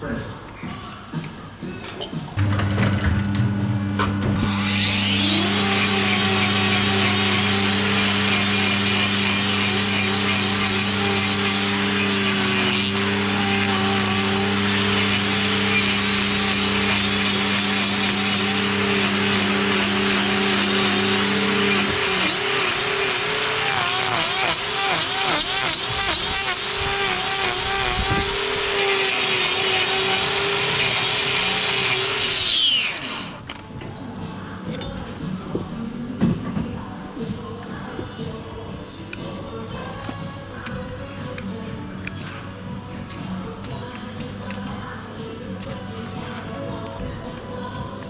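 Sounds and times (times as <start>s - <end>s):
angle grinder cutting hoof: 2.4s - 33.5s, 45.6s - 47.1s.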